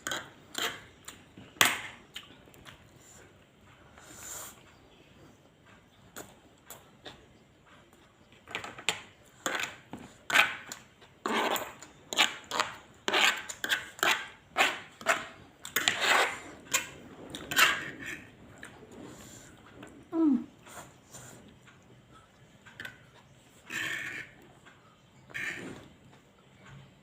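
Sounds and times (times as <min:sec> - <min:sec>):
noisy chewing: 0:00.0 - 0:27.0
utensil scraping: 0:09.4 - 0:20.0, 0:22.8 - 0:26.2.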